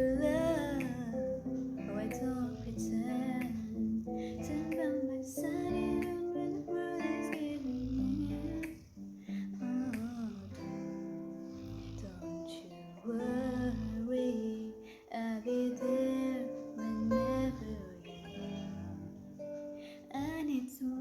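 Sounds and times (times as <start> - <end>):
acoustic guitar music: 0.0 - 21.0
person singing: 0.0 - 21.0
dog snoring: 1.9 - 4.8, 5.6 - 9.0, 9.6 - 14.5.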